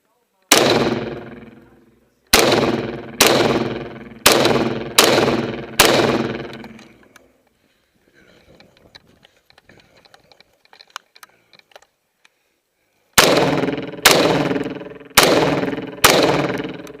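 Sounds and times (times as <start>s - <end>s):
rifle shots echoing: 0.5s - 6.9s, 13.2s - 17.0s
faint clicks and ticks: 8.4s - 12.4s.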